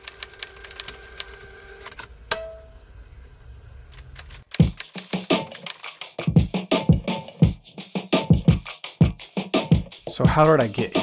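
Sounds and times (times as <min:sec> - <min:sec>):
typewriter key clicks: 0:00.0 - 0:01.4, 0:04.0 - 0:06.0
music with strong beat: 0:04.6 - 0:11.0.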